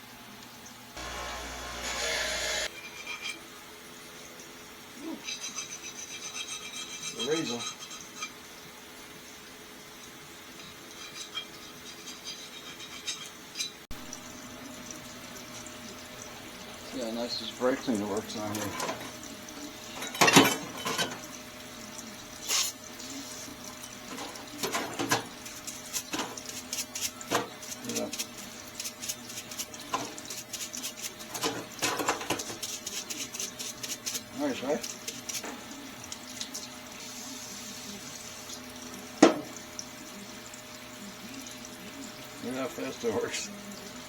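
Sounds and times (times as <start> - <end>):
hand tool scraping metal: 5.2 - 8.4
metal parts clinking in liquid: 10.6 - 13.8, 17.7 - 36.8.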